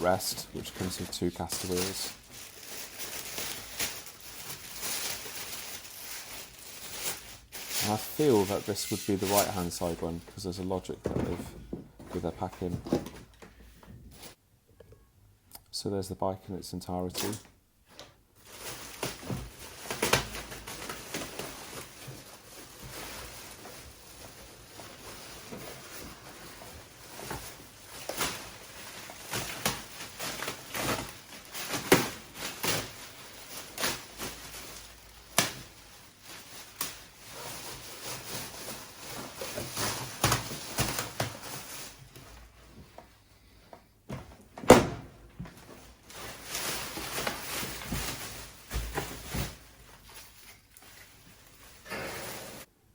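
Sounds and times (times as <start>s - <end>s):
bike parts and packaging clunking: 7.0s - 14.4s, 39.2s - 51.0s.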